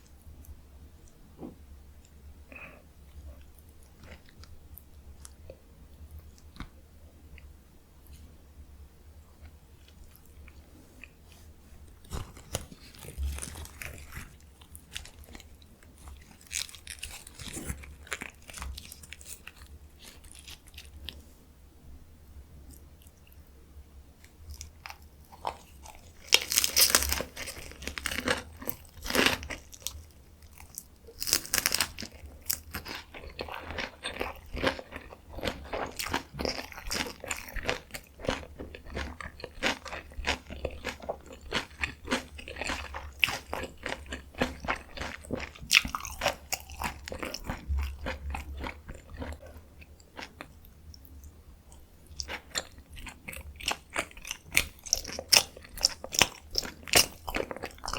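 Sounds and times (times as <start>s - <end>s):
crunchy bites: 12.0s - 21.1s, 24.5s - 51.1s, 52.1s - 57.9s
wet chewing mouth sounds: 24.4s - 57.9s.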